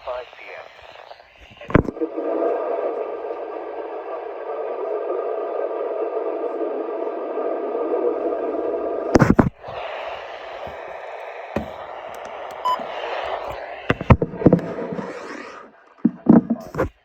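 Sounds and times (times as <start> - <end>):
radio static hiss: 0.0 - 2.0, 9.2 - 17.0.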